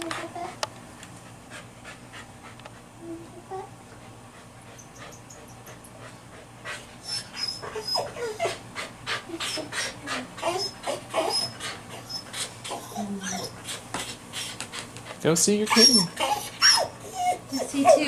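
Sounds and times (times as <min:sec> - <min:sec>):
dog sniffing and panting: 0:00.0 - 0:18.0
dog whining: 0:07.0 - 0:08.7, 0:09.3 - 0:14.6, 0:15.7 - 0:18.0.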